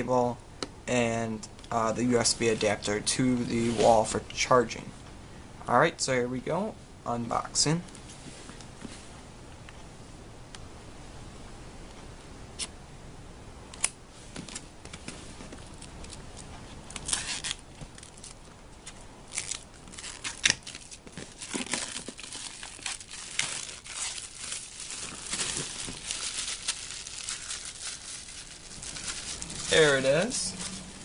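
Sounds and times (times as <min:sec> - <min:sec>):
packaging being torn and crumpled: 0:15.7 - 0:31.0.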